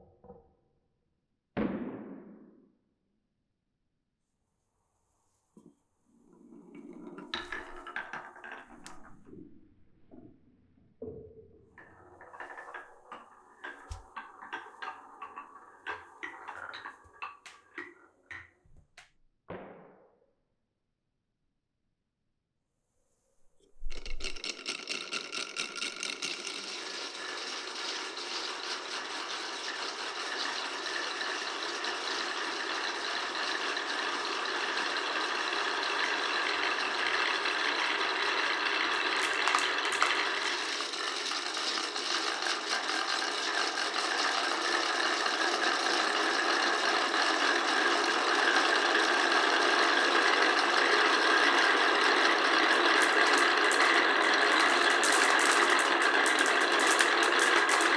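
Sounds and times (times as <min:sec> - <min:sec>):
marbles rattling down wooden run: 0:06.7 - 0:09.3, 0:11.8 - 0:18.6, 0:23.8 - 0:57.9.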